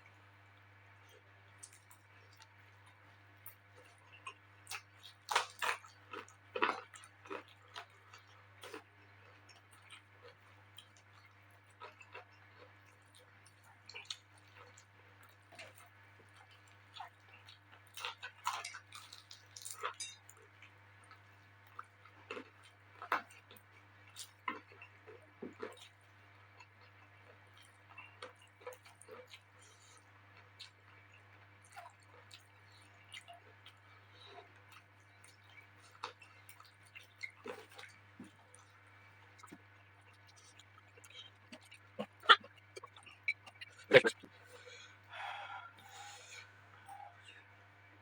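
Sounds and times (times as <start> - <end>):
low electrical hum: 0.0 - 48.0
person chewing food: 1.0 - 47.9
mouth chewing wetly: 39.3 - 45.2.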